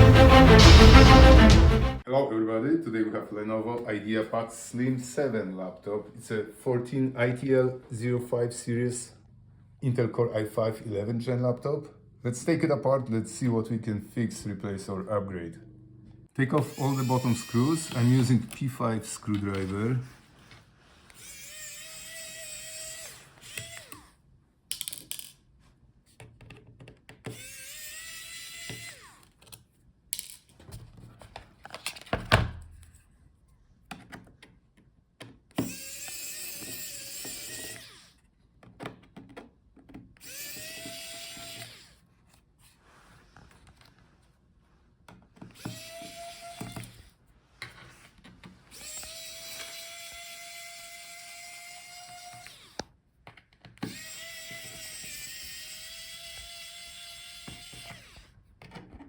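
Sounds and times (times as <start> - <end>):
electric screwdriver whining: 16.4 - 24.2, 27.3 - 29.6, 35.6 - 38.2, 40.2 - 42.1, 45.4 - 47.2, 48.6 - 53.0, 53.8 - 58.4.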